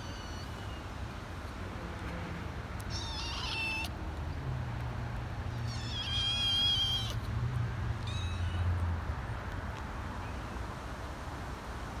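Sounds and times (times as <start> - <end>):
kitten meowing: 2.9 - 3.9, 5.7 - 7.2.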